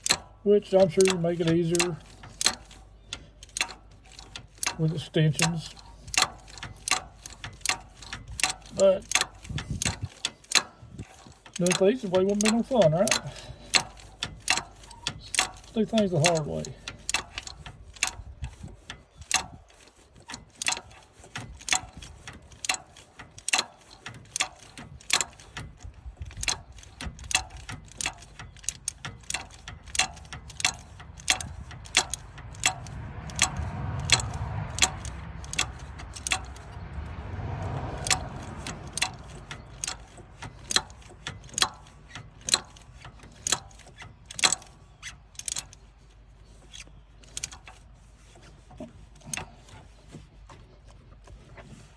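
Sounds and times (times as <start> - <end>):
ratchet wrench clicking: 0.0 - 51.9.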